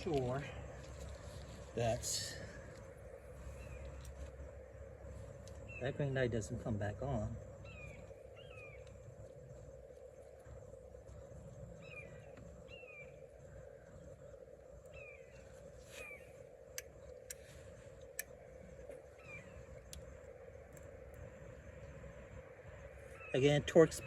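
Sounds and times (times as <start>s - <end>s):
steady low hum: 0.0s - 24.0s
sharp clicks: 16.7s - 19.0s.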